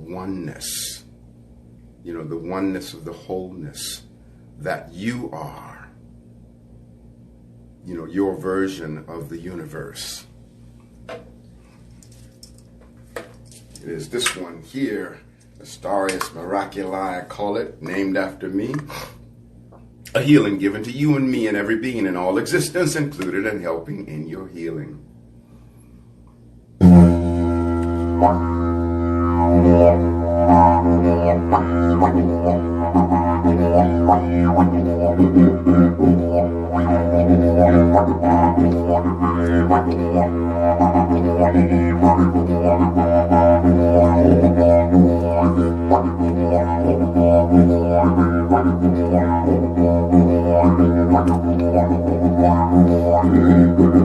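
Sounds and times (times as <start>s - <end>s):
didgeridoo drone: 26.8s - 54.0s.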